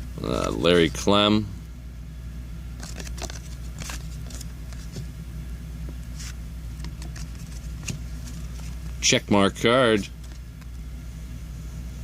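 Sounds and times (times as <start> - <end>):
steady low hum: 0.0 - 12.0
cards flicking and sliding: 2.8 - 5.1, 6.1 - 8.9.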